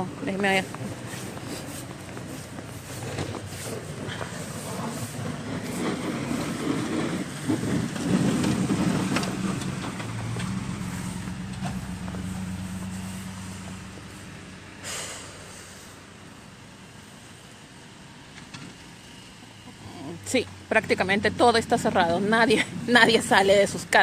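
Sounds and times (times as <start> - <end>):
vehicle engine passing by: 0.0 - 24.0
short hiss: 14.8 - 16.0.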